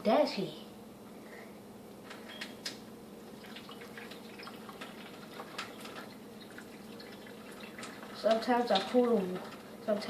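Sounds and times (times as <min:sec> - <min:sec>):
faint steady hum: 0:00.0 - 0:10.0
water dripping and splashing in sink: 0:03.4 - 0:09.8.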